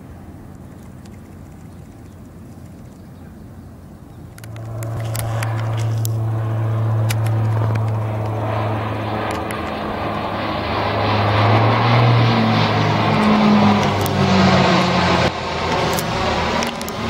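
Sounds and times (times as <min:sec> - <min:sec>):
jet airliner passing close: 0:03.8 - 0:17.0.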